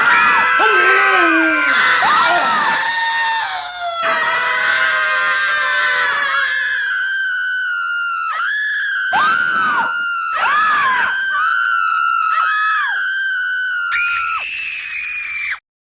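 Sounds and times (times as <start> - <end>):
people screaming: 0.0 - 15.6.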